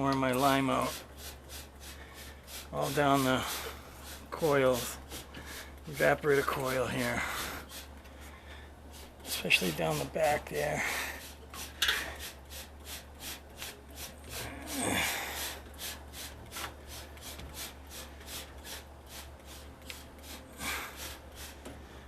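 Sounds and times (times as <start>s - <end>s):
steady low hum: 0.0s - 22.0s
trigger sprayer hissing sprays: 9.0s - 21.7s.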